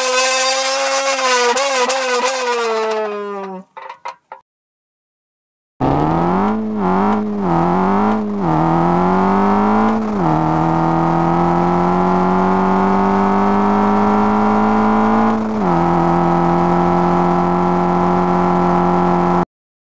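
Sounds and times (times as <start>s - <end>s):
car engine accelerating: 5.8s - 19.4s.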